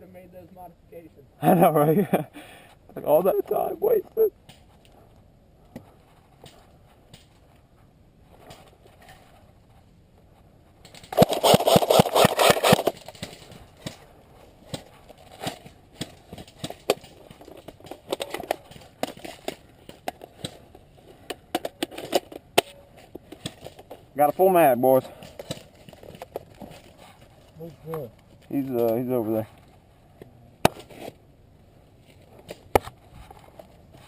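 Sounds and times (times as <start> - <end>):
airsoft gun full-auto burst: 11.2 - 13.0
gear clicks and knocks: 14.6 - 24.4.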